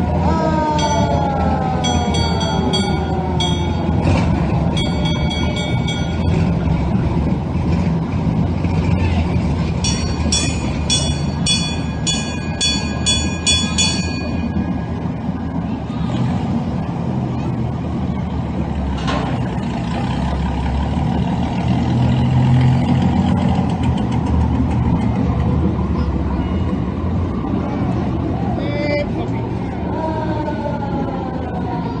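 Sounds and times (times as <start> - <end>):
vehicle engine rumbling: 0.0 - 32.0.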